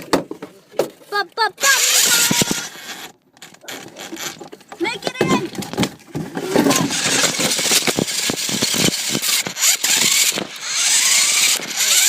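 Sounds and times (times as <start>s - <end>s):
small rc car motor whine: 1.6s - 3.1s, 6.4s - 12.0s.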